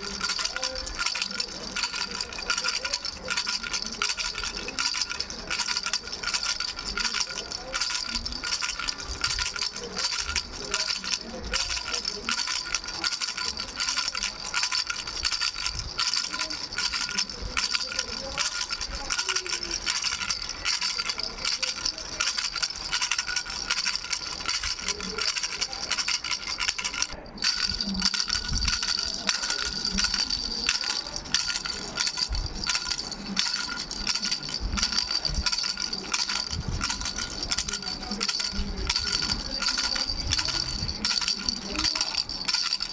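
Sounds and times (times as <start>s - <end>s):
baby rattle bells jingling: 0.0s - 42.9s.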